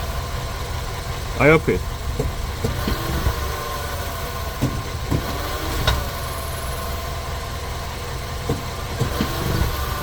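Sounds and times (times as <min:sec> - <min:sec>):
car engine idling: 0:00.0 - 0:10.0
gear shift clunk: 0:02.0 - 0:03.5, 0:04.5 - 0:06.2, 0:08.3 - 0:10.0.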